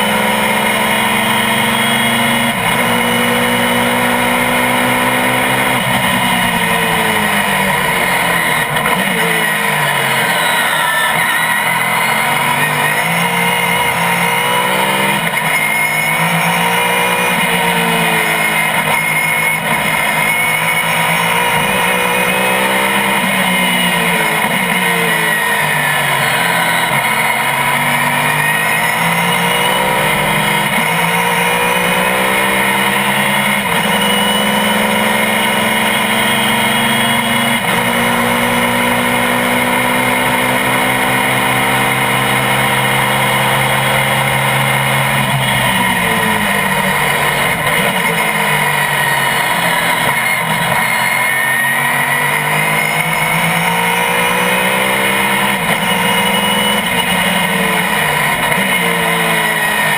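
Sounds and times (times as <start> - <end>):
racing car engine at full throttle: 0.0 - 59.9.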